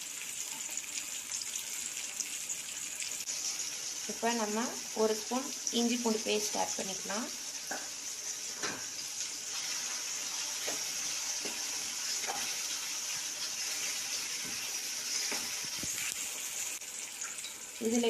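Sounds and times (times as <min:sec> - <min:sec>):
food sizzling in hot oil: 0:00.0 - 0:18.0.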